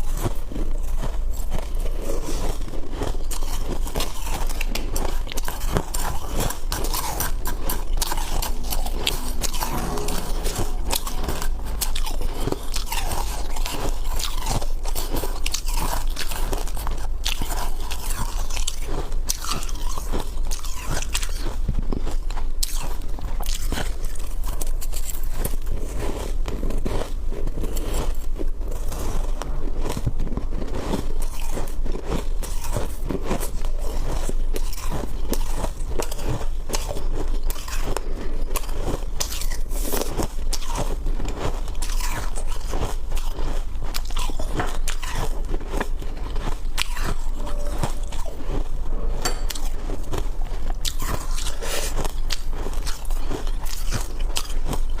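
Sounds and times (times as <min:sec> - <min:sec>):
ice being chewed: 0:00.0 - 0:55.0.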